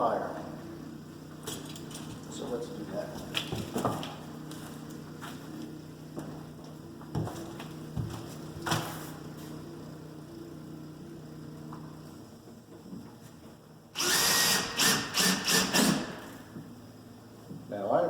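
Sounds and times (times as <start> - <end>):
power drill boring into door: 14.0 - 16.2.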